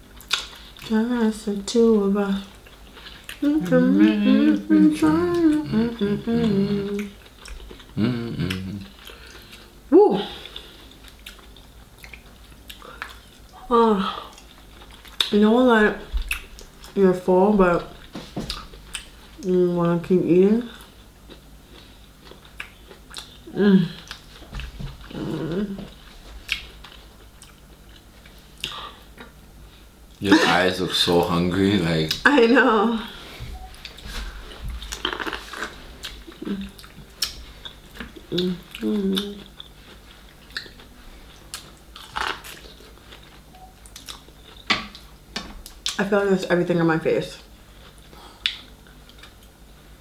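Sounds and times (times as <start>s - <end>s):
chewing seafood: 2.4s - 15.4s, 20.7s - 29.4s, 33.6s - 46.0s
wet mouth clicks and smacks: 36.8s - 37.4s.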